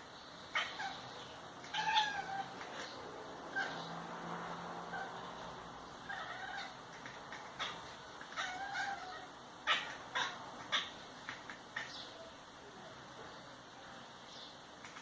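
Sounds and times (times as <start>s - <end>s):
cat chirping: 0.5s - 3.9s, 6.0s - 12.3s, 14.8s - 15.0s.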